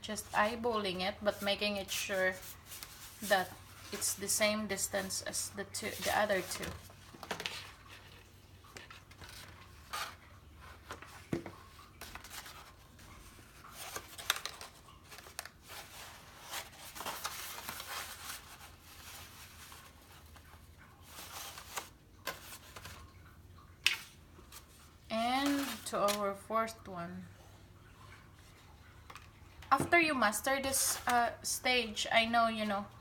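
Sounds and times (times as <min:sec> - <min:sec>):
paper rustling and tapping: 0:05.9 - 0:12.7, 0:13.6 - 0:18.7.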